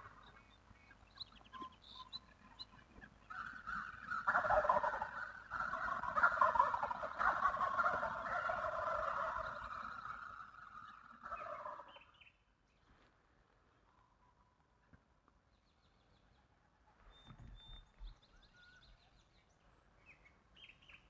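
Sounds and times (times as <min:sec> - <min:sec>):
turkey gobbling: 0:04.0 - 0:09.9, 0:11.1 - 0:11.9.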